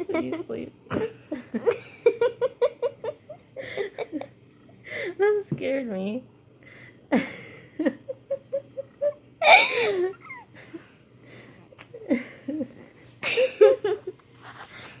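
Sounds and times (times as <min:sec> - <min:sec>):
woman laughing: 0:00.0 - 0:04.3, 0:07.2 - 0:10.5, 0:12.0 - 0:14.2.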